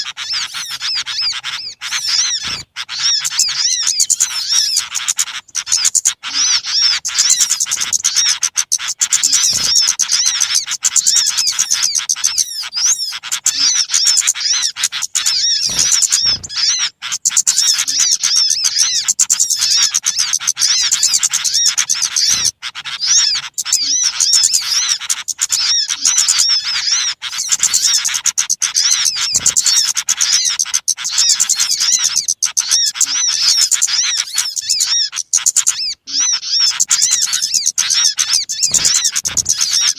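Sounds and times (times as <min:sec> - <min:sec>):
small birds chirping chorus: 0:00.0 - 0:39.9.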